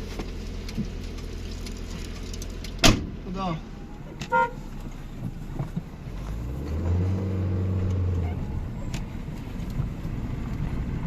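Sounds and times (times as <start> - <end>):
vehicle engine passing by: 5.7 - 11.0.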